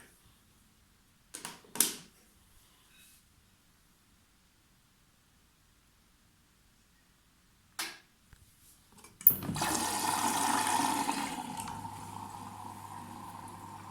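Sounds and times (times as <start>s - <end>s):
washing machine clicks: 9.2s - 9.9s
water rushing into drum: 9.4s - 13.9s.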